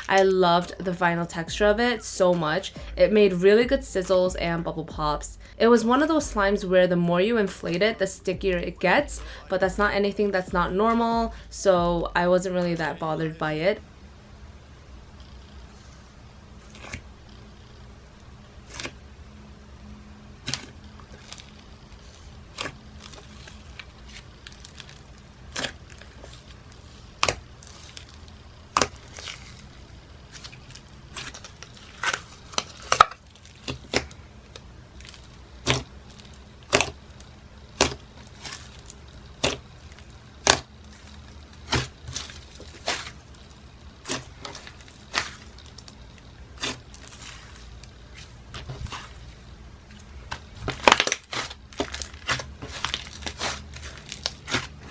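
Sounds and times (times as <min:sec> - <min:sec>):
slime stretched and pressed: 0:35.0 - 0:37.0, 0:46.6 - 0:49.3.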